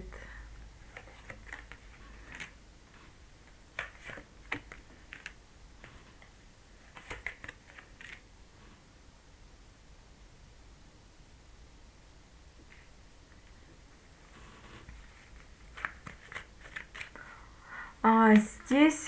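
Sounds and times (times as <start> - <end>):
cards clicking on a table: 0.9 - 2.6, 3.5 - 6.3, 6.9 - 8.2, 15.7 - 17.2.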